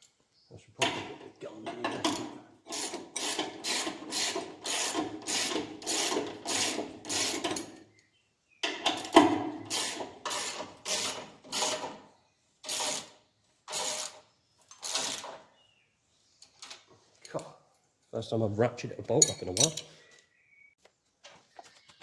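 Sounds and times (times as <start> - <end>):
ratchet wrench clicking: 13.7 - 15.3.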